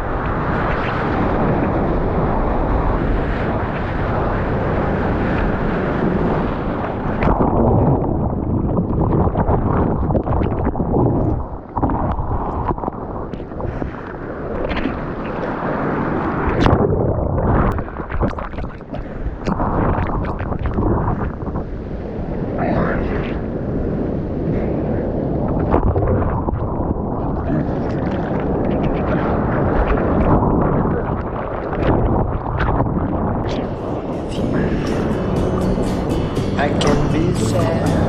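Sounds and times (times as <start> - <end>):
wind buffeting microphone: 0.0 - 36.4
surf water rushing: 33.6 - 38.0.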